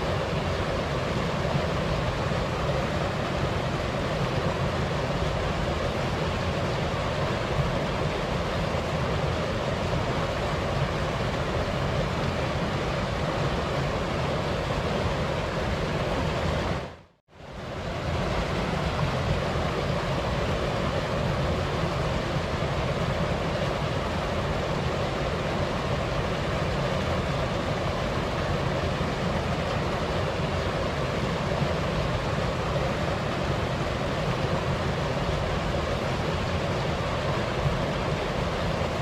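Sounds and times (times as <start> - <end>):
wind: 0.0 - 39.0
waterfall rushing: 17.5 - 39.0.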